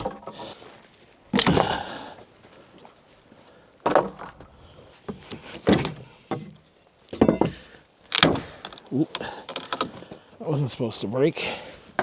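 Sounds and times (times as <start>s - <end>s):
pry bar prying wooden boards: 1.4s - 1.9s, 5.1s - 6.6s, 7.2s - 10.1s
sharp wooden knocks: 3.9s - 4.4s, 7.2s - 10.1s.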